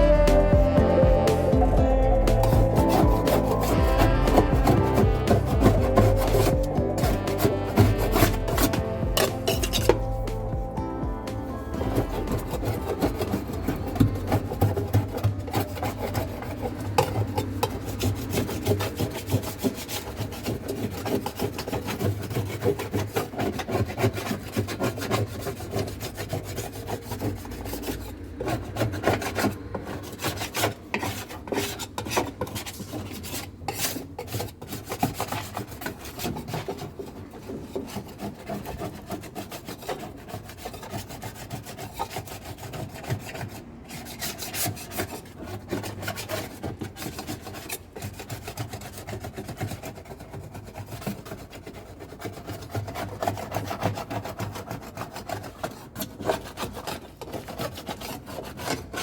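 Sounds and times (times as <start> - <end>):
rough scrubbing: 0.0 - 59.0.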